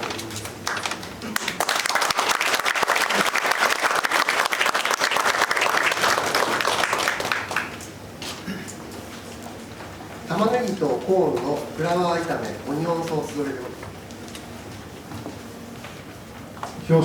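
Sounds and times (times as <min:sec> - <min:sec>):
audience applauding: 0:00.0 - 0:07.9.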